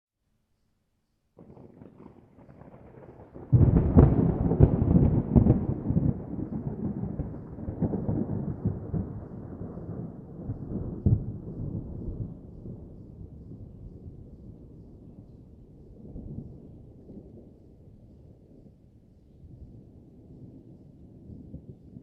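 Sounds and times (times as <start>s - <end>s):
distant thunder: 1.4s - 17.6s.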